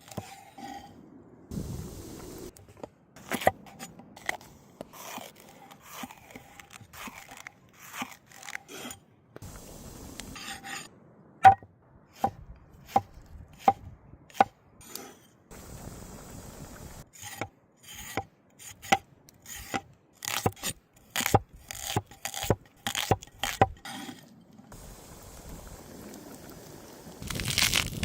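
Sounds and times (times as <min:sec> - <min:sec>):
knife chopping on wooden board: 0:12.2 - 0:14.5, 0:17.2 - 0:23.8.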